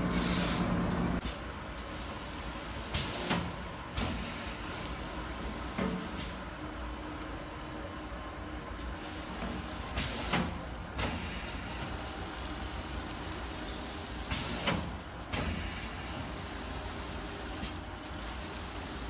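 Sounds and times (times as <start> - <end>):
hissing air with knock: 2.9 - 4.5, 9.3 - 11.9, 14.3 - 16.3.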